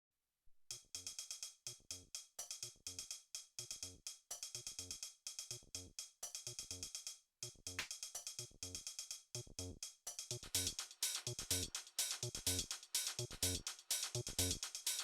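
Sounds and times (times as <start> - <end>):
drum machine hi-hats: 0.7 - 15.0
staccato synth bassline: 9.4 - 14.6.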